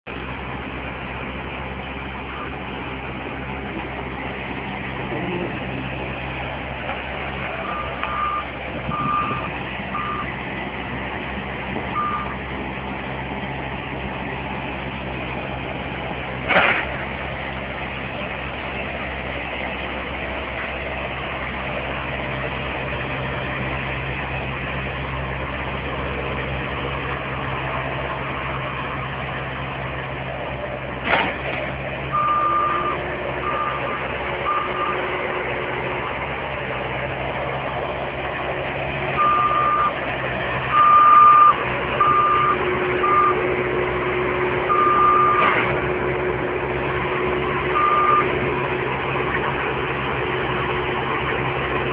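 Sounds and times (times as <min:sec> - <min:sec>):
loader engine running: 0:00.1 - 0:51.9
back-up alarm beeping: 0:07.6 - 0:10.3, 0:12.0 - 0:12.4, 0:32.1 - 0:35.0, 0:39.2 - 0:40.0, 0:40.7 - 0:43.4, 0:44.7 - 0:45.5, 0:47.7 - 0:48.4.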